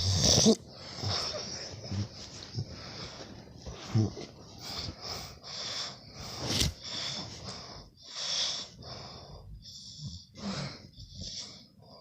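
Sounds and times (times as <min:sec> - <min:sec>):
man snoring: 0:00.0 - 0:01.4.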